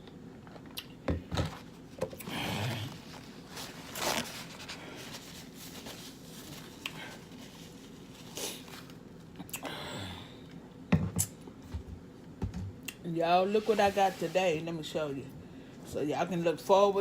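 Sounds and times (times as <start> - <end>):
crinkly rustles: 2.9 - 9.3.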